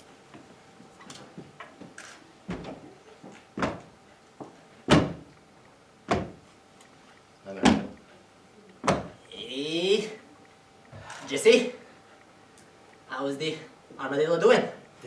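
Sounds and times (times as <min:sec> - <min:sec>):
knocks and thumps on stage: 0:03.6 - 0:03.8, 0:04.9 - 0:05.2, 0:06.1 - 0:06.4, 0:07.6 - 0:07.9, 0:08.8 - 0:09.2.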